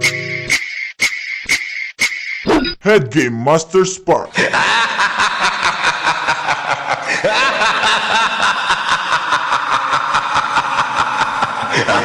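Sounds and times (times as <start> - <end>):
snickering laughter: 4.4 - 12.0.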